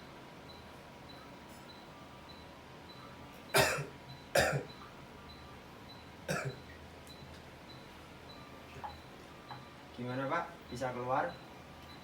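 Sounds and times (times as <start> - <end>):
man coughing forcefully: 3.6 - 4.7, 6.3 - 6.6.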